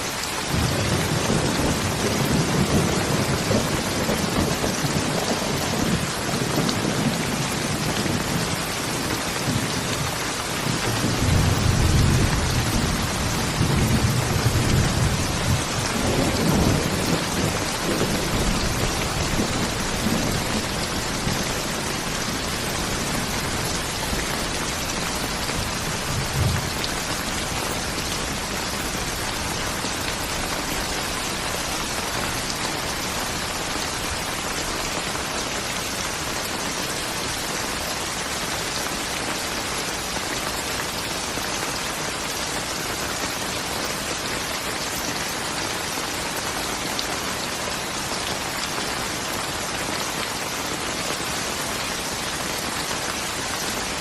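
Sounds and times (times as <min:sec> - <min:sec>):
heavy rain falling: 0:00.0 - 0:54.0
thunder rumbling: 0:00.5 - 0:08.6, 0:09.5 - 0:33.5.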